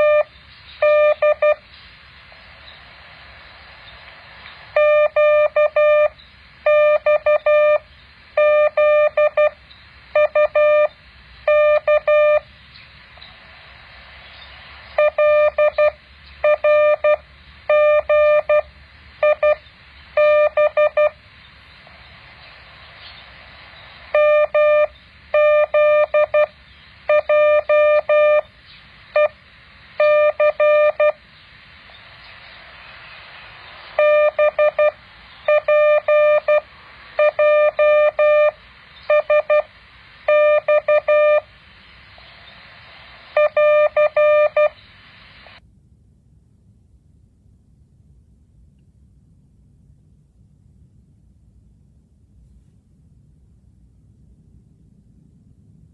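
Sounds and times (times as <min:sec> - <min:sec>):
morse code beeps: 0:00.0 - 0:01.6, 0:04.7 - 0:12.5, 0:15.0 - 0:19.6, 0:20.2 - 0:21.2, 0:24.1 - 0:26.5, 0:27.1 - 0:28.4, 0:29.2 - 0:29.4, 0:30.0 - 0:31.2, 0:34.0 - 0:41.5, 0:43.4 - 0:44.8
faint steady hiss: 0:00.0 - 0:55.9.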